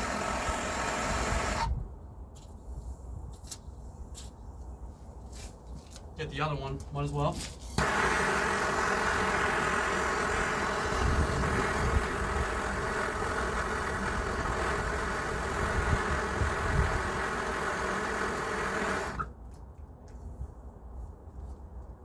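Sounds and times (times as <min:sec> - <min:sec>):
gas torch roaring hiss: 0:00.0 - 0:01.8, 0:07.8 - 0:19.3.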